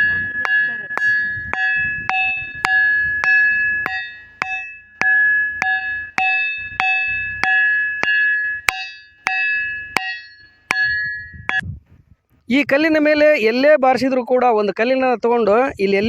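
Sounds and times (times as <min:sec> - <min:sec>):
stone striking ringing rock: 0:00.0 - 0:11.7.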